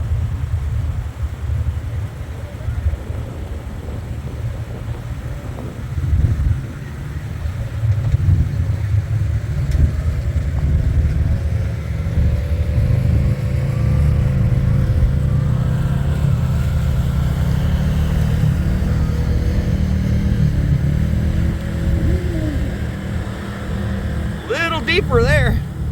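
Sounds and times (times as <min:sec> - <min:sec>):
off-road vehicle engine running: 0:06.3 - 0:25.9.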